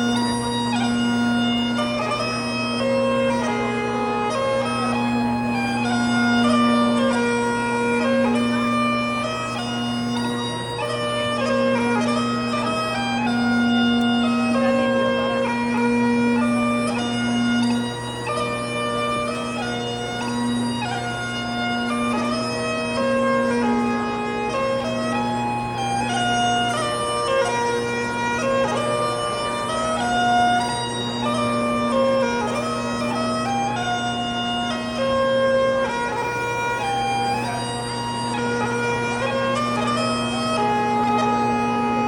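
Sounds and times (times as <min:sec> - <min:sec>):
bagpipes playing: 0:00.0 - 0:42.0.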